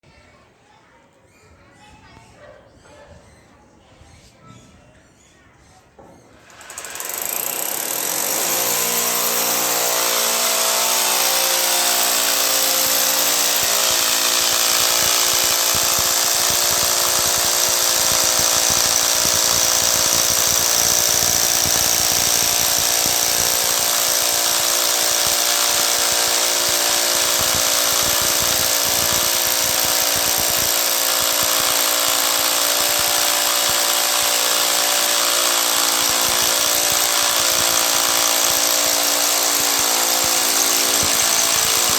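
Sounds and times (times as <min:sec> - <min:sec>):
electric drill whining: 0:06.4 - 0:41.9.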